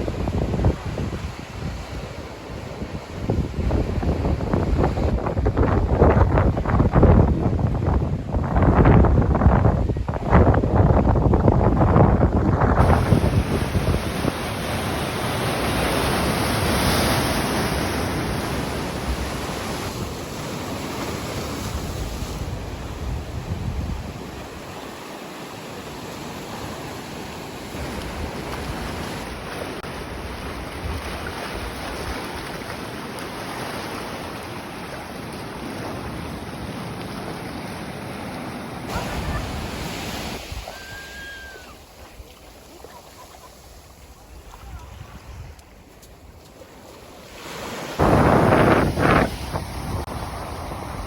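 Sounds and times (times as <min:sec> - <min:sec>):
wind buffeting microphone: 0:00.0 - 0:24.8, 0:48.0 - 0:51.0
sea waves washing onto shore: 0:12.3 - 0:51.0.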